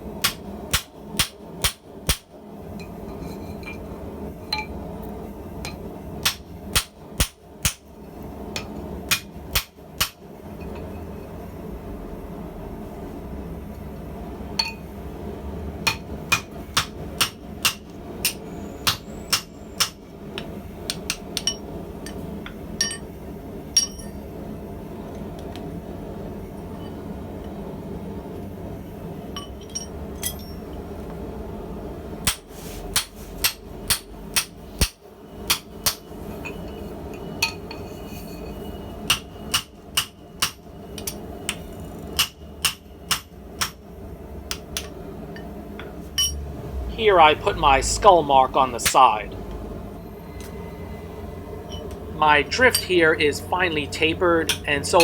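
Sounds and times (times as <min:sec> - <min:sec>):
hammer striking steel on anvil: 0:08.6 - 0:10.2, 0:15.8 - 0:20.0, 0:20.9 - 0:22.2, 0:22.8 - 0:23.1, 0:23.8 - 0:24.2, 0:32.2 - 0:36.6, 0:39.1 - 0:41.6, 0:42.2 - 0:43.8, 0:46.2 - 0:46.4, 0:52.6 - 0:53.0, 0:54.4 - 0:55.0.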